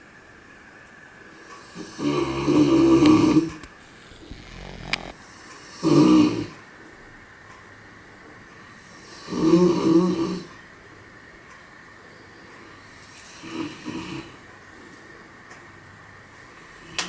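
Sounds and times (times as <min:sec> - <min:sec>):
brief click: 0:03.0 - 0:05.2.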